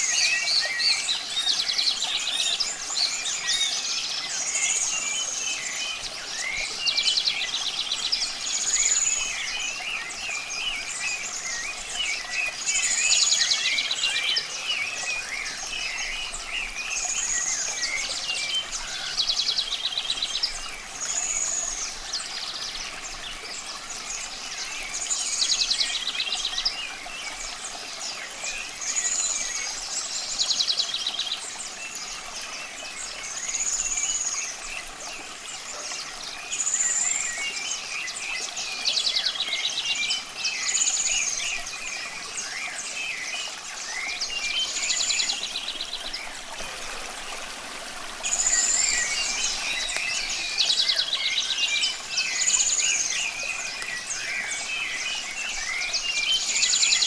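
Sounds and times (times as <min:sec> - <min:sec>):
running water: 0:00.0 - 0:57.0
birds chirping: 0:42.7 - 0:57.0.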